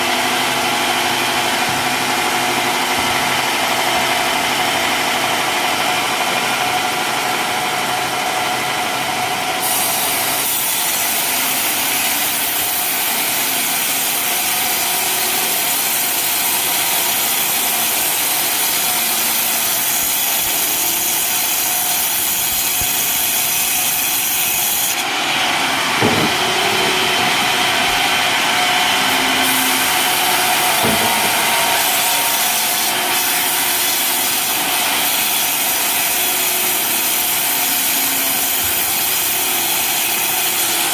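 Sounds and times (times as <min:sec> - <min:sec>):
running machine: 0:00.0 - 0:40.9
saw blade cutting wood: 0:09.6 - 0:40.9
short knocks: 0:26.0 - 0:28.0, 0:30.4 - 0:31.7.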